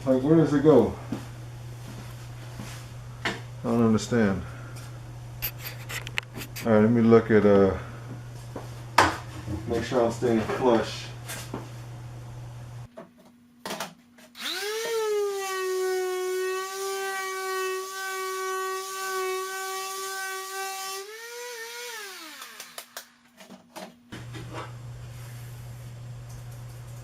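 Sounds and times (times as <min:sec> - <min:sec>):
electric sander whining: 0:14.4 - 0:18.2, 0:18.8 - 0:23.0.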